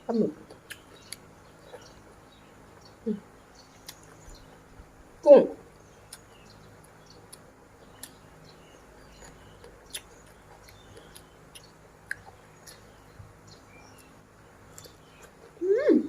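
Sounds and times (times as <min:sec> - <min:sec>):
person chewing food: 0:00.4 - 0:02.1, 0:09.0 - 0:13.0.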